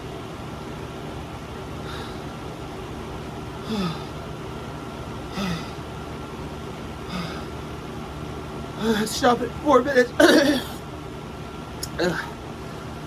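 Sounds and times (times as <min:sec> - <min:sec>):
background hum: 0:00.0 - 0:13.0
person groaning breathily: 0:03.6 - 0:04.2, 0:05.3 - 0:05.8, 0:07.1 - 0:07.5, 0:08.8 - 0:09.2, 0:11.8 - 0:12.4.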